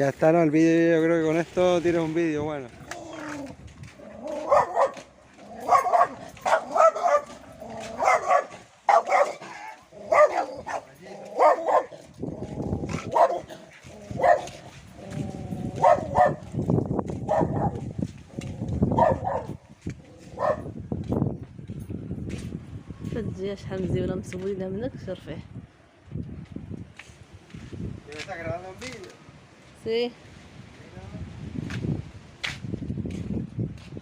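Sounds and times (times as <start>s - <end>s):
dog barking: 4.3s - 12.0s, 13.0s - 14.6s, 15.8s - 16.5s, 17.2s - 17.8s, 18.9s - 19.6s, 20.3s - 20.7s.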